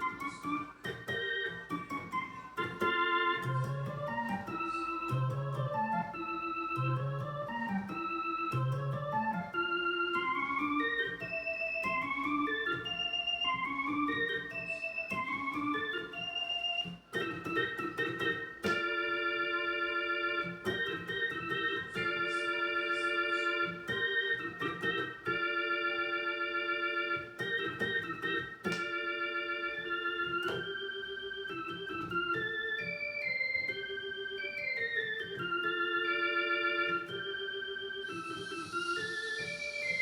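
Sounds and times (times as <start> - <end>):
organ chords and melody with vibrato: 0.0 - 40.0.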